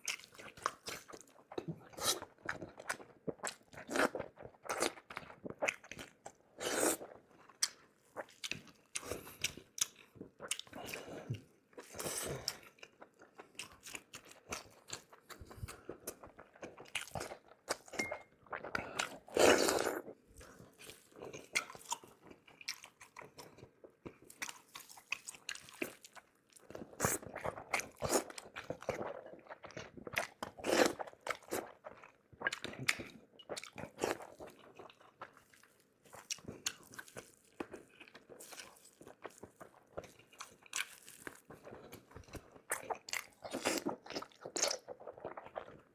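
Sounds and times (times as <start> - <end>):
chewing and crunching: 0.0 - 45.9.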